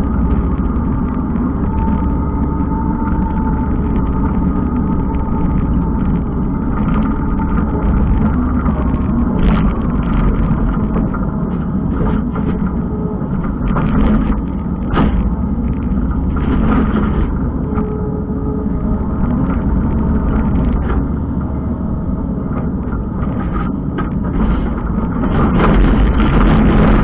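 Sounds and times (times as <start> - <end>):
diesel engine running: 0.0 - 27.0
machine clanks and rattles: 3.0 - 18.0, 22.4 - 27.0.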